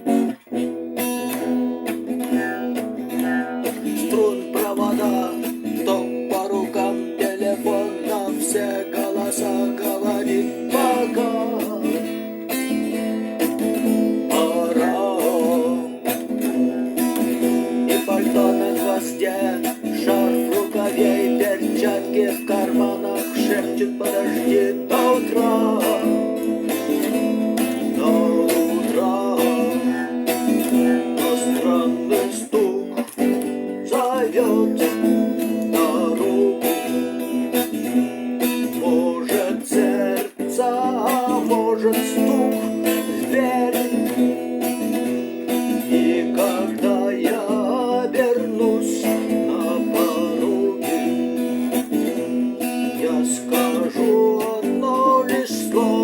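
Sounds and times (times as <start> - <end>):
acoustic guitar strumming: 0.0 - 56.0.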